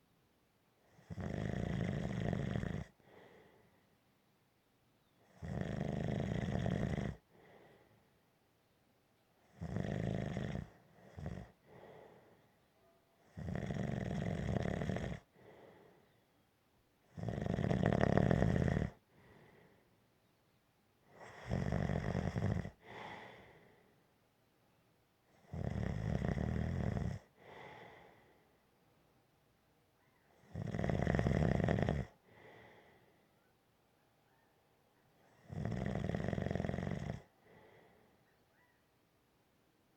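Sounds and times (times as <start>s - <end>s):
person snoring: 1.0s - 2.9s, 5.3s - 7.2s, 9.6s - 11.9s, 13.3s - 15.3s, 17.2s - 19.0s, 21.2s - 23.5s, 25.4s - 28.1s, 30.5s - 32.6s, 35.4s - 37.3s
soft breath: 3.0s - 4.0s, 7.2s - 8.2s, 11.5s - 12.7s, 15.2s - 16.4s, 19.0s - 20.0s, 22.7s - 24.1s, 27.3s - 28.6s, 32.1s - 33.5s, 37.2s - 38.8s.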